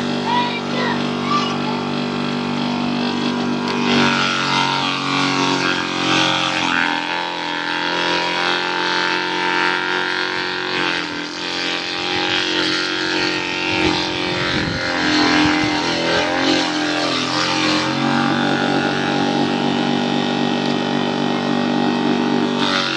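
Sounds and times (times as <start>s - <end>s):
forage chopper motor running: 0.0s - 22.9s.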